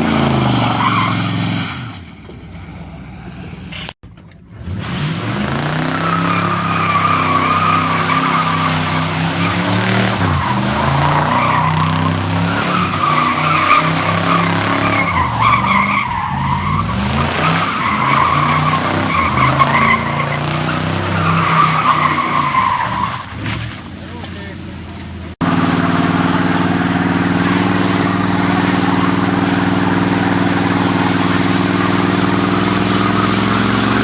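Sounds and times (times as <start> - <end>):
car engine revving high: 4.6 - 23.4, 25.4 - 34.0
tyres squealing: 5.5 - 25.0, 26.9 - 34.0.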